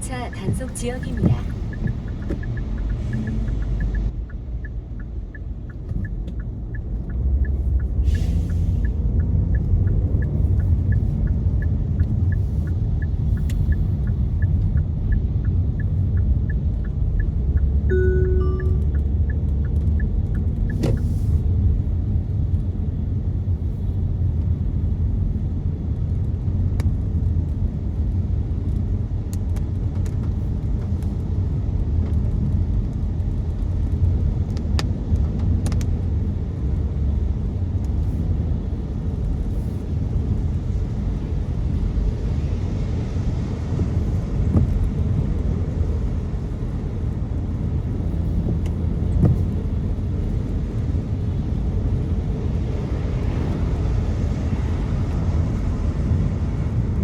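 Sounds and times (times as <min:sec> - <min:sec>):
car driving on wet road: 0:00.0 - 0:57.0
sharp ticks: 0:00.2 - 0:21.0.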